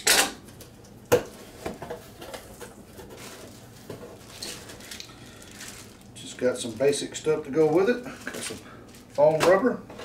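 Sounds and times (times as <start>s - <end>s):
packaging rustling: 2.0s - 9.6s.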